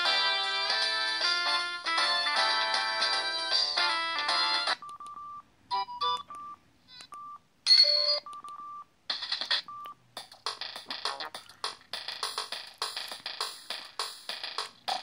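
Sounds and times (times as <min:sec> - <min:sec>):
phone ringtone melody: 0:00.1 - 0:06.6, 0:07.2 - 0:08.8.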